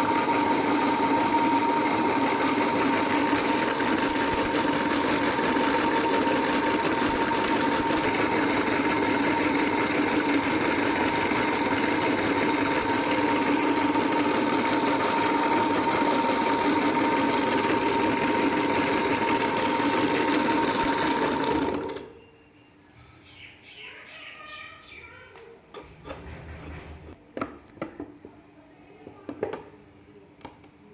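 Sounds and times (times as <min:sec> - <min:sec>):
electric meat grinder whining: 0:00.0 - 0:22.1.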